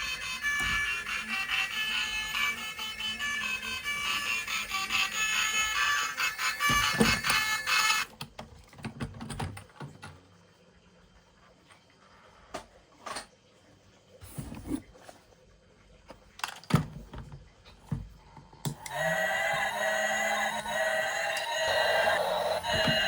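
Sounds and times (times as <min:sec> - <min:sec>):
toys clicking and knocking: 0:00.0 - 0:08.4, 0:18.7 - 0:23.0.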